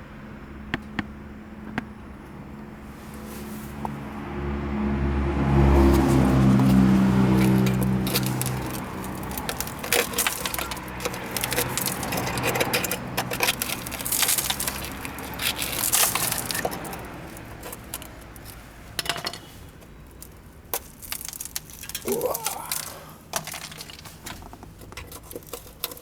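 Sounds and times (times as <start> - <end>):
crunching and crackling: 5.6 - 26.0.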